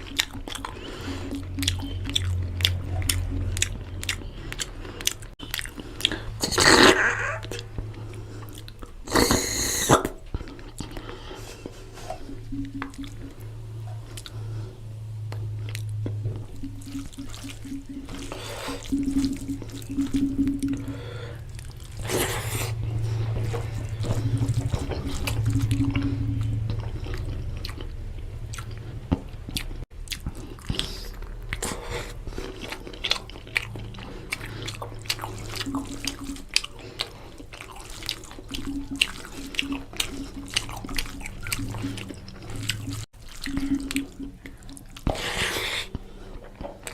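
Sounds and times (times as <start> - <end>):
background music with bass line: 0.0 - 4.8, 15.3 - 27.6
wet chewing and lip-smacking: 0.0 - 14.6, 15.3 - 46.9.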